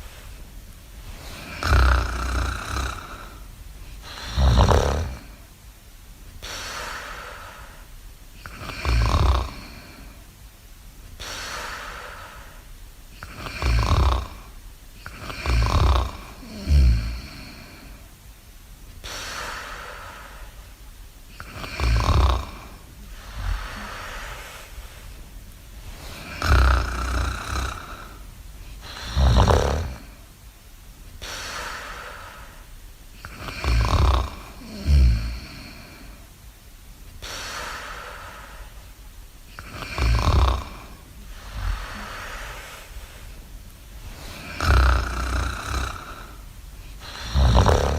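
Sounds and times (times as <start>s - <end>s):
person snoring: 1.1s - 5.4s, 6.4s - 10.2s, 13.2s - 18.0s, 21.4s - 25.1s, 25.9s - 30.3s, 31.2s - 36.2s, 39.6s - 43.3s, 44.0s - 47.9s
breathy exhales: 21.4s - 25.2s, 39.6s - 47.9s.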